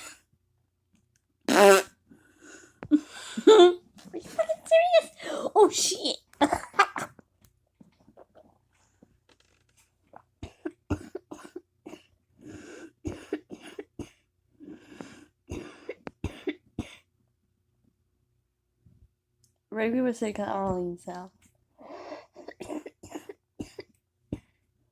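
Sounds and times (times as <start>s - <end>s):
person coughing: 13.1s - 14.2s, 15.5s - 17.0s, 22.4s - 24.5s.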